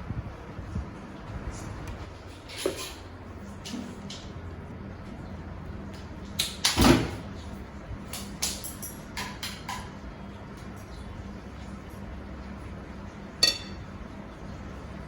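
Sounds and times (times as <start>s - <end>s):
steady low hum: 10.0s - 15.0s.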